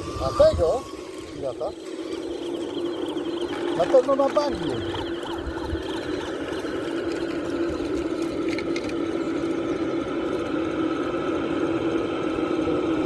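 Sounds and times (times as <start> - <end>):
model truck motor whine: 0.0 - 13.0.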